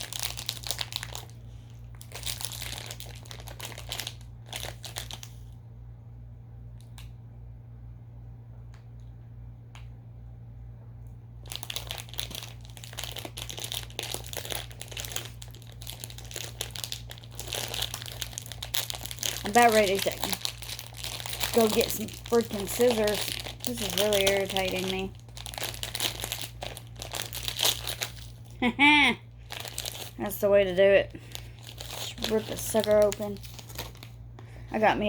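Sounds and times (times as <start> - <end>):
plastic packaging crinkling: 0.0 - 5.6, 11.4 - 35.0
steady low hum: 0.0 - 35.0.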